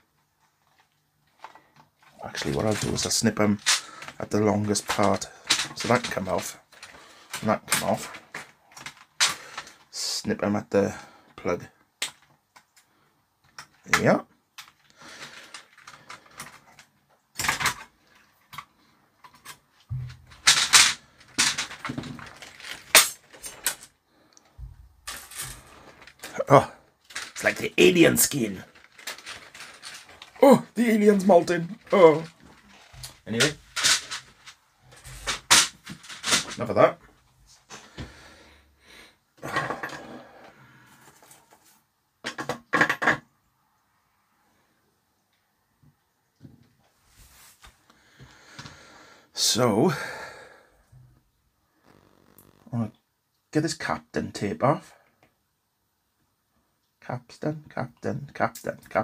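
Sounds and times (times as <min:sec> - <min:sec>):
scraping and rustling of tools: 0:00.4 - 0:09.9, 0:14.6 - 0:38.4
metal tools clattering on workbench: 0:02.4 - 0:06.9, 0:19.3 - 0:23.9, 0:25.0 - 0:26.4, 0:31.0 - 0:36.6, 0:39.4 - 0:40.2.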